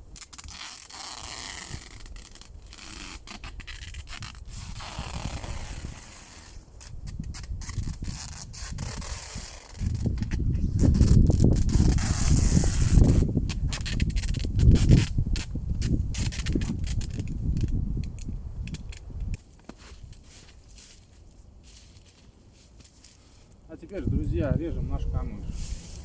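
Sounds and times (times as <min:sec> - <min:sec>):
material rubbing and rustling: 0:00.2 - 0:17.7, 0:19.6 - 0:26.0
low rumble: 0:24.0 - 0:26.0.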